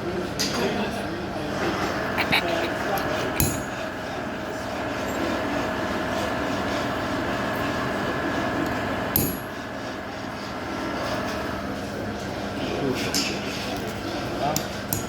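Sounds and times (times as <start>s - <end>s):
workshop machinery hum: 0.0s - 15.0s.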